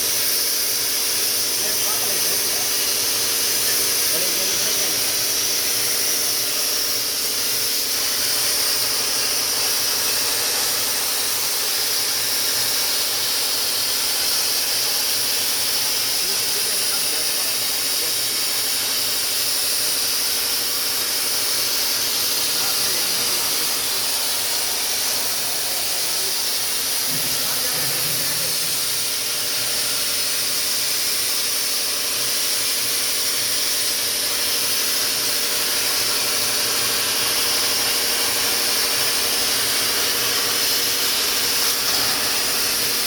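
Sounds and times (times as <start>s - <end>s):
plasma torch hissing: 0.0s - 43.0s.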